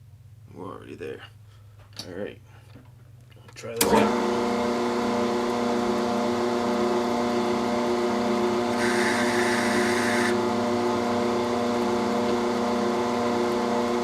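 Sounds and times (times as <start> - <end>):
metal lathe gear whine: 8.7 - 10.4.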